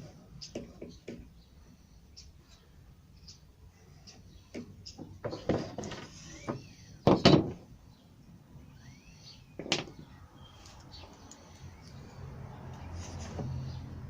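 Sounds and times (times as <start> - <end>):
wood scraping and knocking: 4.6 - 7.7, 13.0 - 13.6
faint bird chirps: 7.9 - 12.2.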